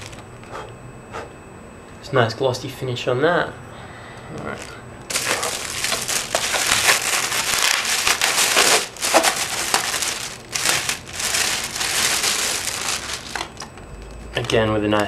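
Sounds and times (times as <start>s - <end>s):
plastic packaging crinkling: 0.0s - 0.2s, 4.4s - 14.6s.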